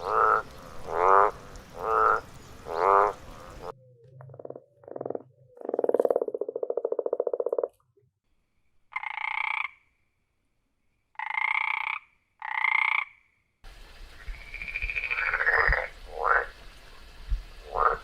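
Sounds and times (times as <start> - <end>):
background hiss: 0.0 - 3.7, 13.7 - 18.0
frog croaks: 0.0 - 7.8, 8.9 - 9.9, 11.2 - 13.3, 14.3 - 16.5, 17.6 - 18.0.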